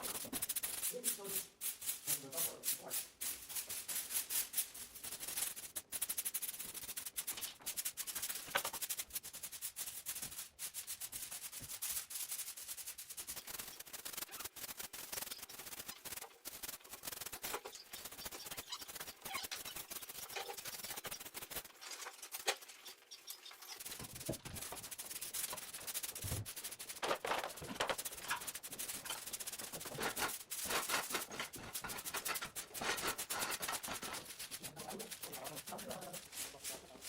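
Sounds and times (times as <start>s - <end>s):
hand tool scraping moss: 27.1s - 37.0s.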